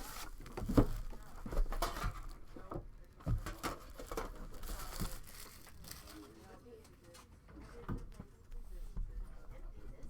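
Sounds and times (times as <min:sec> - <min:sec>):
plastic wrap crinkling and tearing: 0:04.6 - 0:06.2.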